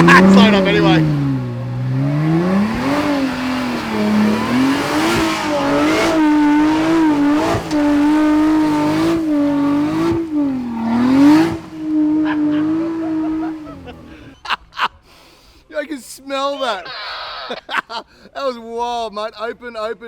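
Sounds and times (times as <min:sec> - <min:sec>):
car engine revving hard: 0:00.0 - 0:14.2.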